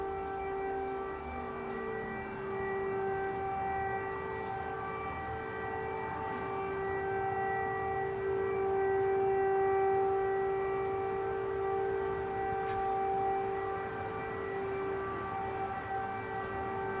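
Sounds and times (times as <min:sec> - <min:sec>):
air raid siren: 0:00.0 - 0:17.0.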